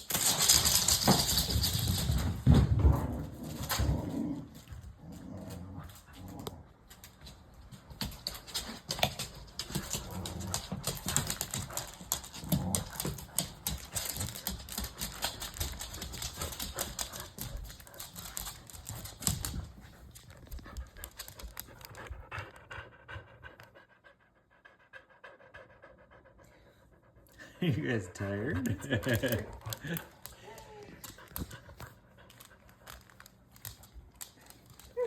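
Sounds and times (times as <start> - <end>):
dogs panting: 7.7 - 35.0.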